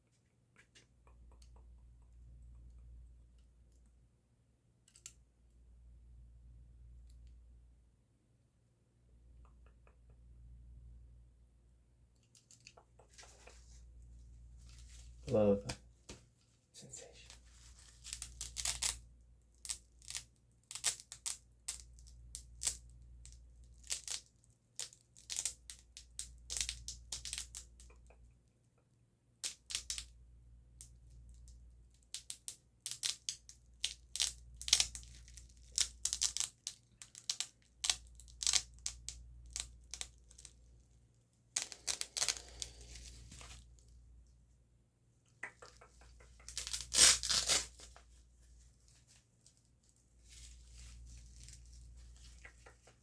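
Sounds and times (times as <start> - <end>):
rustling: 12.4 - 18.9, 39.6 - 44.4, 45.5 - 53.0.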